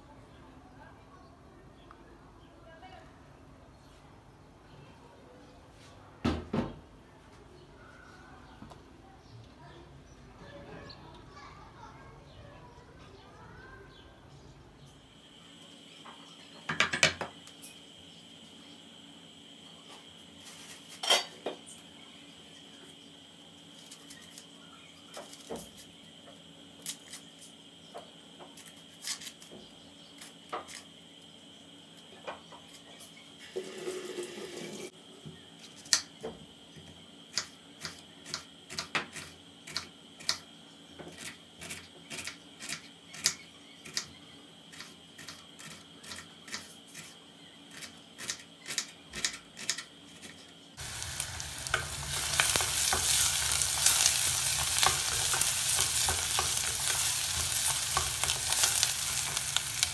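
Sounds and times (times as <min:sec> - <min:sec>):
utensils clicking and knocking: 0:50.8 - 0:59.9.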